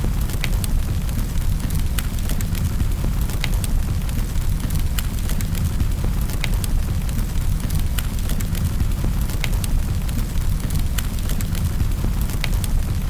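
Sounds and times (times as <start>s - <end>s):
flames rumbling: 0.0s - 13.0s.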